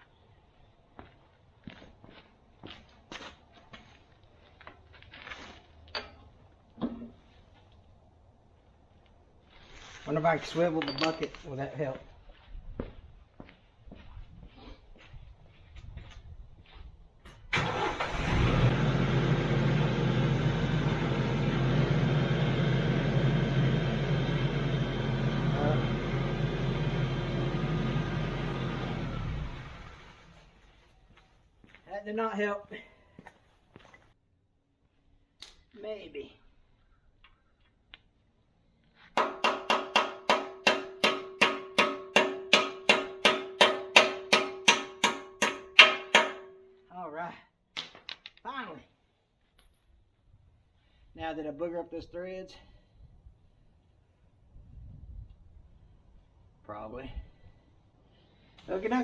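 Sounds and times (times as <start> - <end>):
diesel engine starting and idling: 17.5 - 30.6
hammer striking steel: 39.2 - 46.8.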